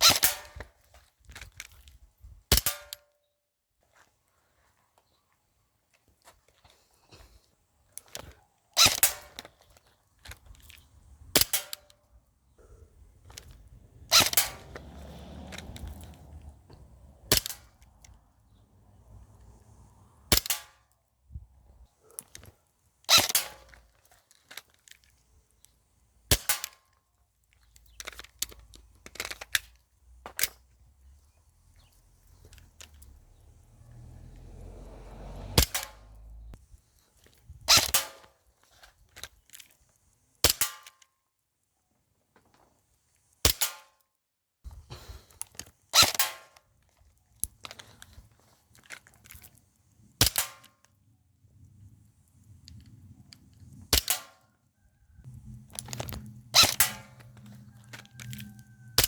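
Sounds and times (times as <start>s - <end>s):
gun handling rustles and clicks: 0.0s - 3.2s, 5.9s - 12.0s, 22.1s - 30.8s, 31.8s - 33.1s, 36.9s - 41.1s, 44.7s - 51.0s, 55.6s - 58.8s
airsoft gun shots: 35.6s - 36.0s.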